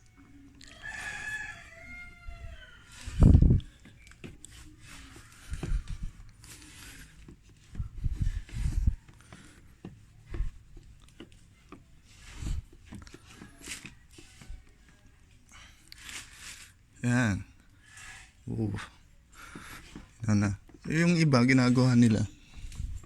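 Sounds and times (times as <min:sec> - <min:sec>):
low handling thumps: 0:07.3 - 0:14.8.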